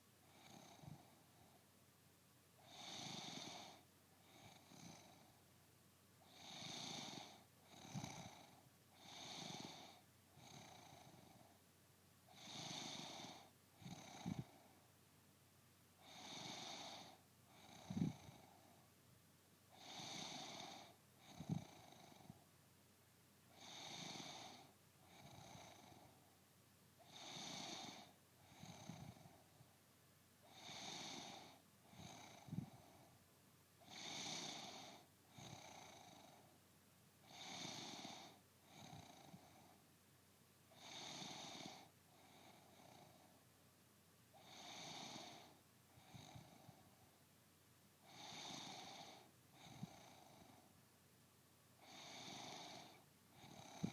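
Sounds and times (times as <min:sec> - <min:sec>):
woman snoring: 0:02.7 - 0:03.8, 0:06.3 - 0:11.4, 0:12.3 - 0:14.5, 0:16.0 - 0:18.4, 0:19.8 - 0:22.2, 0:23.6 - 0:26.0, 0:27.1 - 0:29.3, 0:30.5 - 0:32.7, 0:33.8 - 0:36.3, 0:37.3 - 0:39.5, 0:40.8 - 0:41.9, 0:44.4 - 0:46.7, 0:48.1 - 0:50.5, 0:51.8 - 0:53.9.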